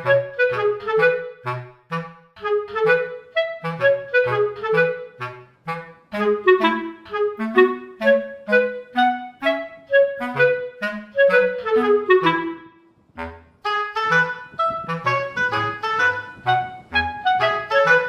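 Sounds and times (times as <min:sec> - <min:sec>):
light tune with bass line: 0:00.0 - 0:18.0.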